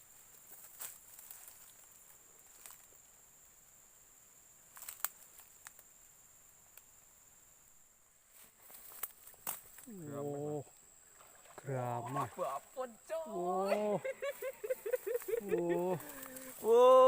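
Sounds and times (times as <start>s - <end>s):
high-pitched insect drone: 8.6s - 17.0s.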